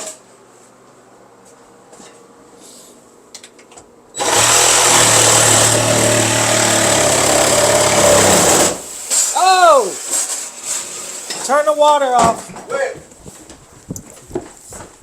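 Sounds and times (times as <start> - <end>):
electric power saw running: 4.2 - 8.8.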